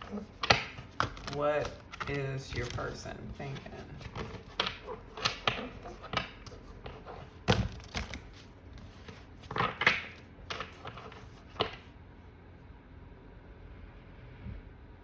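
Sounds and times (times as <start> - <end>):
cards being shuffled: 0.0 - 11.9.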